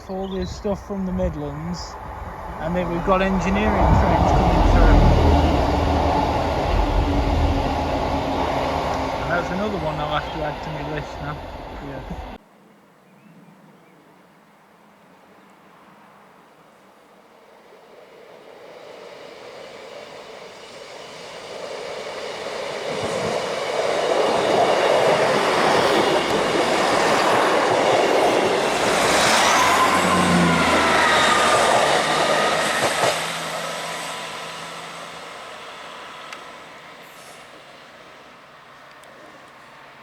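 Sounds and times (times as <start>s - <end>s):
train running past: 0.0s - 12.4s, 17.3s - 40.0s
high whine: 1.0s - 12.4s.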